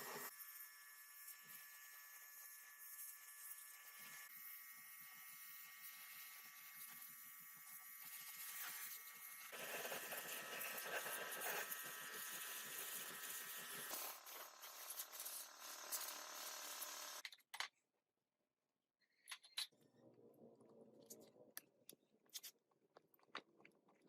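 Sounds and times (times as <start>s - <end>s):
small electric tool buzzing: 0.0s - 17.2s.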